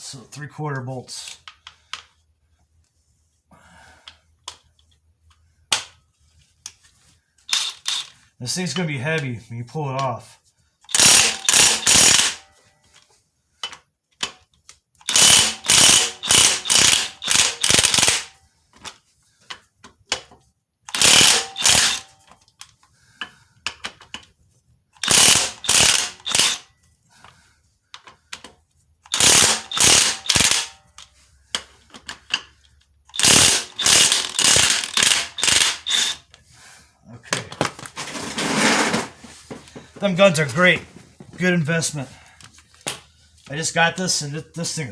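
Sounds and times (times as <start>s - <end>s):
impact gun rattling: 10.9s - 12.4s, 15.0s - 18.3s, 20.9s - 22.1s, 25.0s - 26.7s, 29.1s - 30.8s, 33.1s - 36.2s.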